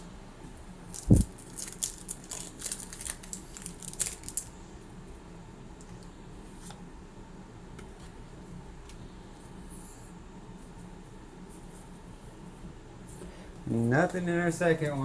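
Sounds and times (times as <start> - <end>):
foil wrapper crinkling and tearing: 0.9 - 4.5.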